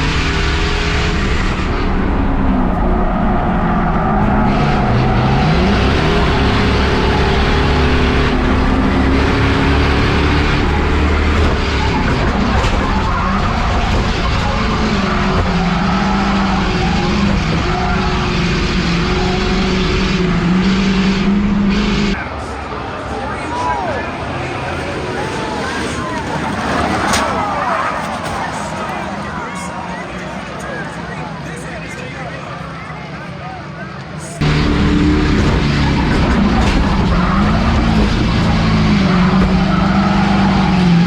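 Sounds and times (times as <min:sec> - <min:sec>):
tyre noise: 0:00.0 - 0:22.2, 0:23.5 - 0:41.0
race car engines running hard: 0:00.0 - 0:41.0.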